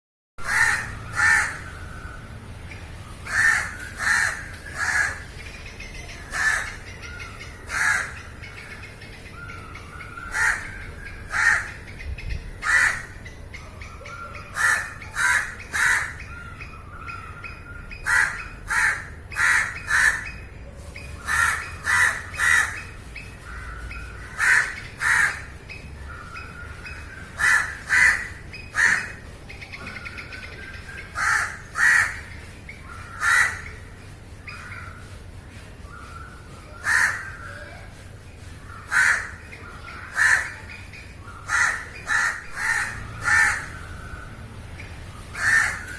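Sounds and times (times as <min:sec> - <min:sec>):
crows cawing: 0:00.4 - 0:01.9, 0:03.3 - 0:05.3, 0:06.3 - 0:08.4, 0:09.8 - 0:11.8, 0:12.6 - 0:13.2, 0:14.5 - 0:16.2, 0:18.0 - 0:20.3, 0:21.2 - 0:22.8, 0:23.5 - 0:25.6, 0:27.4 - 0:29.2, 0:31.2 - 0:32.3, 0:33.1 - 0:33.9, 0:36.8 - 0:37.4, 0:38.7 - 0:39.4, 0:40.0 - 0:40.6, 0:41.5 - 0:43.9, 0:45.4 - 0:45.9.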